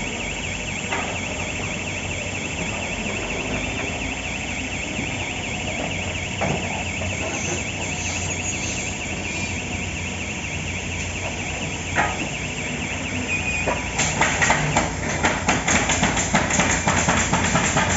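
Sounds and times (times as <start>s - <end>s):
warbling warning tone: 0.0s - 15.2s
machine mechanical hum: 0.0s - 17.9s
nail gun firing rapid shots: 13.9s - 17.9s.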